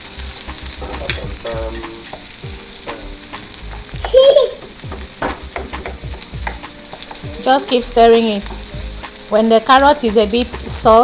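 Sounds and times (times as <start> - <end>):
vegetables sizzling in hot oil: 0.0 - 11.0
spoon scraping a pot: 5.5 - 9.1.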